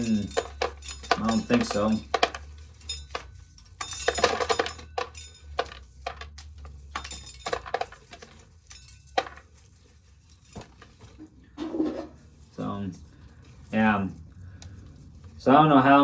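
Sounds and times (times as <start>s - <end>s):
corn kernels clattering into container: 0.0s - 9.5s.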